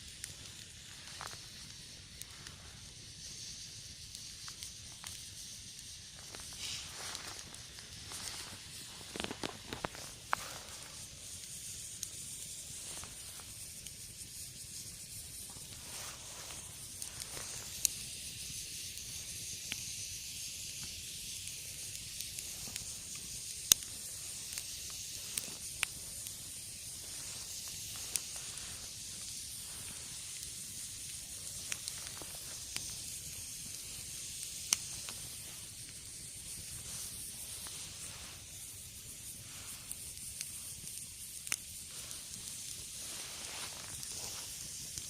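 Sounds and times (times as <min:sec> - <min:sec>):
campfire crackling and popping: 0:00.0 - 0:45.0.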